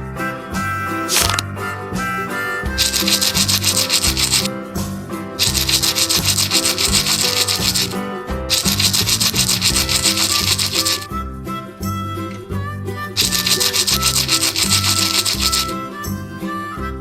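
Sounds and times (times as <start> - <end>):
fast rhythmic scrubbing: 2.8 - 4.5, 5.4 - 11.1, 13.2 - 15.8.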